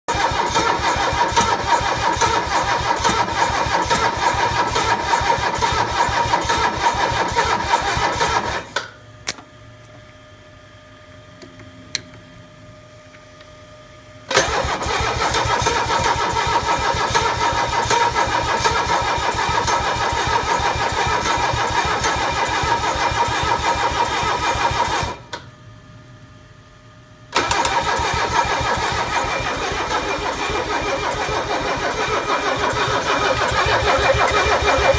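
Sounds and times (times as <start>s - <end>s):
diesel engine cranking: 0.1s - 8.7s, 14.3s - 25.2s, 27.4s - 34.9s
starter motor whine: 0.1s - 8.7s, 14.3s - 25.4s, 27.3s - 34.9s.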